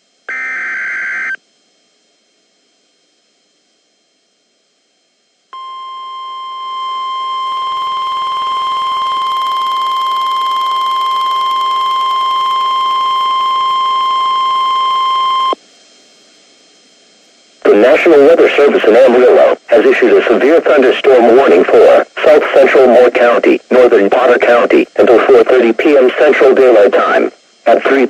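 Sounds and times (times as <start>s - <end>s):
steady warning alarm tone: 5.6s - 15.6s
faint radio hiss: 7.1s - 28.0s.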